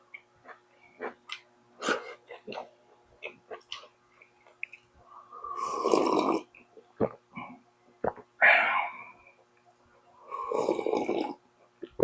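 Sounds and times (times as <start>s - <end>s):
wet chewing clicks and smacks: 2.5s - 4.9s
noisy mouth sound: 5.4s - 9.2s, 10.2s - 12.0s.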